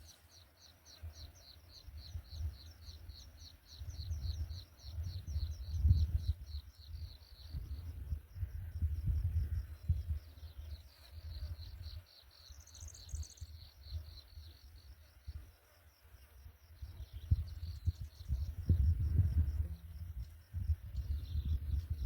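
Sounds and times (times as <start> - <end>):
insect chirping: 0.0 - 22.0.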